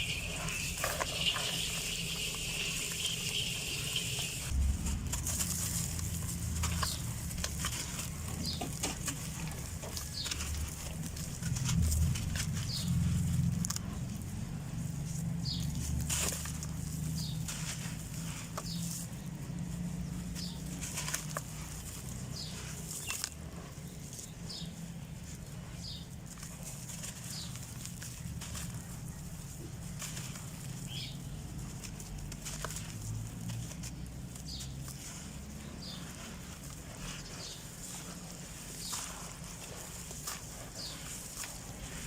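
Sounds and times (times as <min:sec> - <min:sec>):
steady low hum: 0:00.0 - 0:15.4
dry dirt crumbling with crunches: 0:00.0 - 0:42.0.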